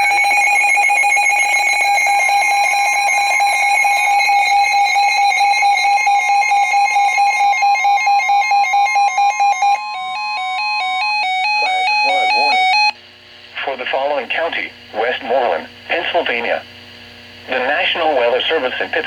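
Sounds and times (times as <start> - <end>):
electronic alarm tone: 0.0 - 13.0
higher electronic tone: 9.8 - 12.9.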